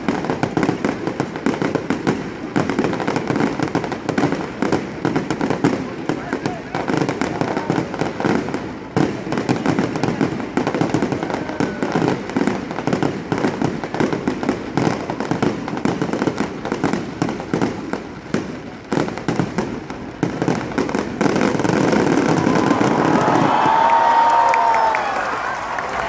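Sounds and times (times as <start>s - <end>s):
fireworks crackling and banging: 0.0s - 26.0s
steady rush of noise: 19.8s - 26.0s.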